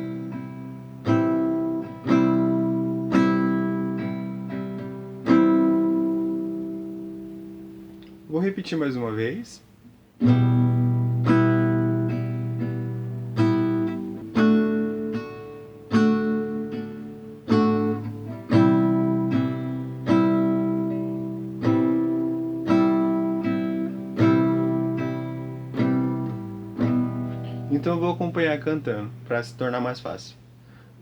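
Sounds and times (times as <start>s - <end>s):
acoustic guitar strumming chords: 0.0s - 31.0s.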